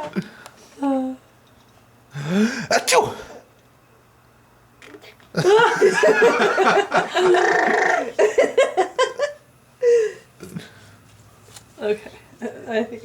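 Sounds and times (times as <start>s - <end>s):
baby laughing: 6.9s - 8.3s.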